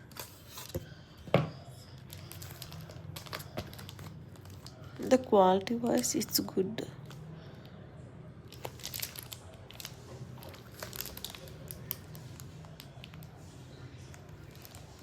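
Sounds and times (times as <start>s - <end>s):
packaging crinkling: 2.0s - 5.2s, 8.5s - 13.4s, 14.1s - 15.0s.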